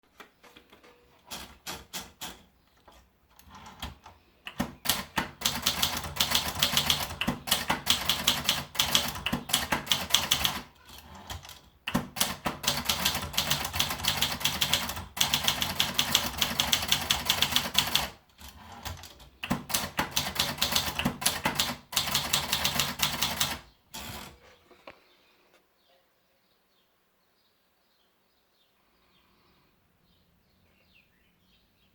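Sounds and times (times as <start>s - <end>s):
typewriter keystrokes: 1.2s - 2.5s, 3.4s - 24.4s.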